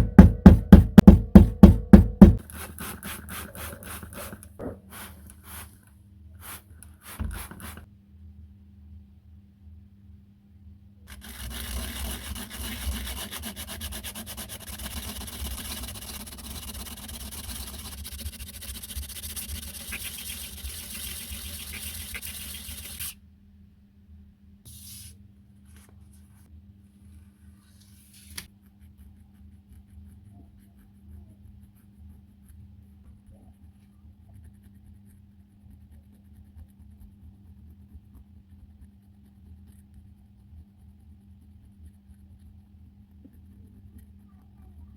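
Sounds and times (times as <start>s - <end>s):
metal ring being sanded: 11.1s - 23.2s.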